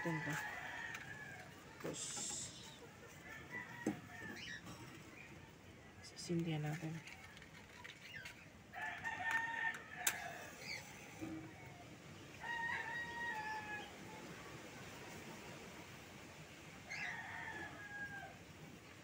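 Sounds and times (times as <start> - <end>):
rooster crowing: 0.0 - 1.6, 3.2 - 4.6, 8.8 - 11.8, 12.4 - 14.1, 16.9 - 18.4.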